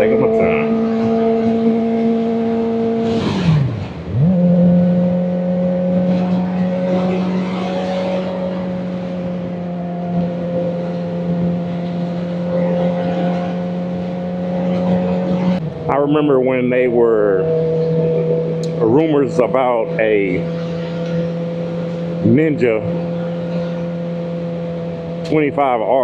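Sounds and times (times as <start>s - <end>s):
motorcycle engine running: 0.0s - 26.0s.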